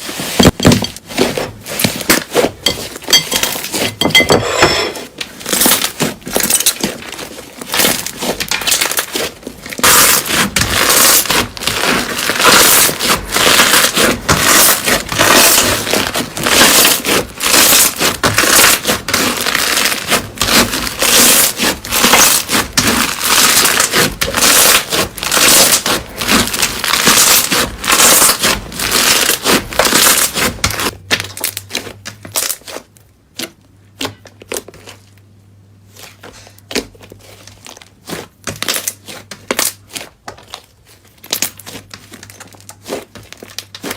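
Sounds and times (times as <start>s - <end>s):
slime crackling and popping: 5.2s - 35.2s, 35.9s - 43.9s.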